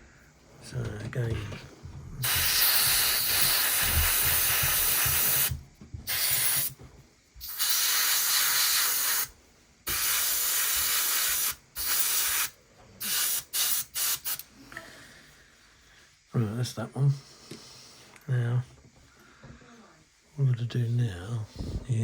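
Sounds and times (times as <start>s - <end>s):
paint spraying hiss: 2.2s - 6.8s, 7.4s - 14.6s.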